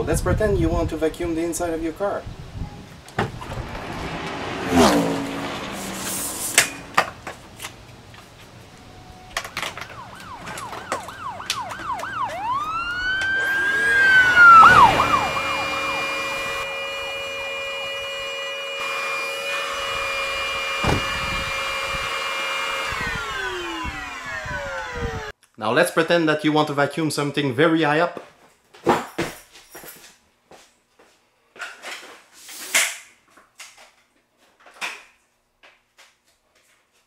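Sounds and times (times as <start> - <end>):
wavering siren-like whistle: 8.8 - 25.3
vacuum cleaner motor whine: 11.8 - 25.3.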